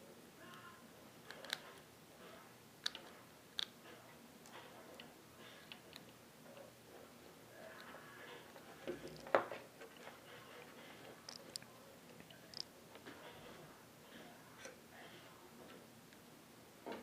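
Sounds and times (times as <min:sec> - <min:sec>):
clicks of small plastic parts: 0:01.3 - 0:01.8.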